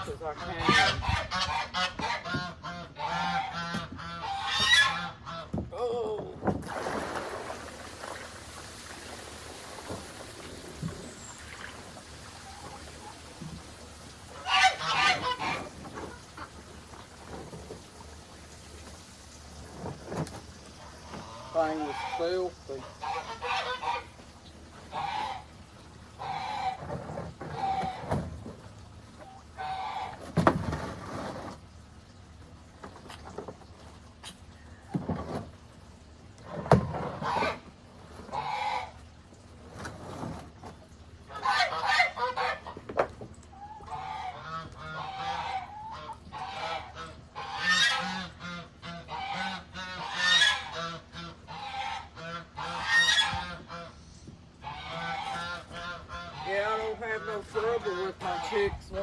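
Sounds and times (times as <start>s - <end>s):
geese honking: 0.2s - 5.6s, 14.2s - 16.6s, 20.8s - 24.2s, 24.8s - 25.6s, 26.2s - 26.9s, 29.2s - 30.3s, 38.3s - 39.0s, 41.3s - 42.8s, 43.5s - 58.8s
poultry calling: 14.3s - 16.5s, 20.8s - 24.2s.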